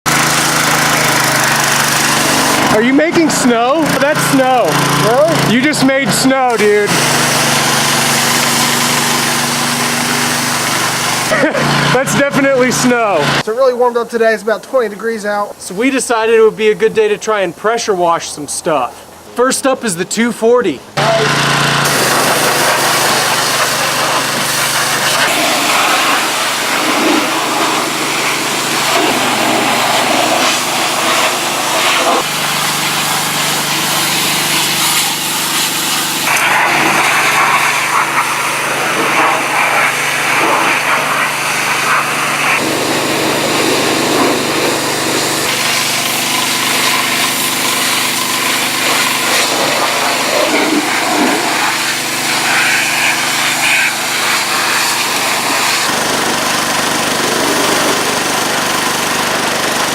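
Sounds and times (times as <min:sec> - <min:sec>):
pressure washer engine running: 0:00.0 - 0:13.7, 0:20.9 - 0:59.9
high-pressure water spray hissing: 0:00.1 - 0:13.4, 0:21.0 - 0:59.9.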